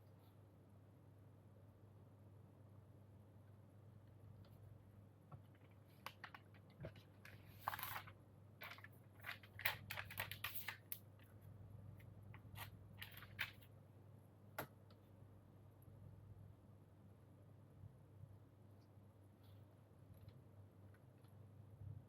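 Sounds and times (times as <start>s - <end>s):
crinkly rustles: 5.4s - 11.4s, 12.3s - 13.7s.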